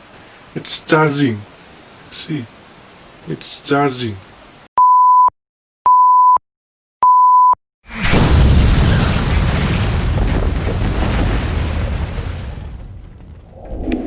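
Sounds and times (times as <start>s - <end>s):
electronic beep: 7.0s - 7.6s
loud boom: 7.9s - 13.9s.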